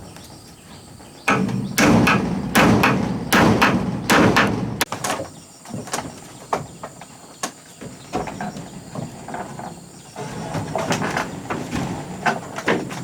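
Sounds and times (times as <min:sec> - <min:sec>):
heavy knocks on wood: 0:01.3 - 0:04.9.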